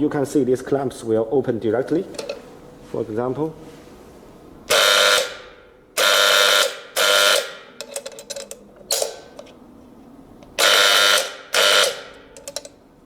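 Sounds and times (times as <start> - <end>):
curtain controller buzzing: 4.7 - 7.7, 10.6 - 12.7.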